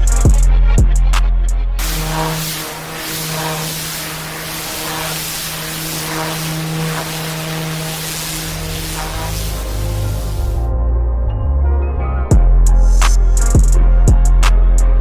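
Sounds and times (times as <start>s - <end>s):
pressure washer engine running: 1.8s - 10.7s
water spraying hiss: 1.8s - 10.7s.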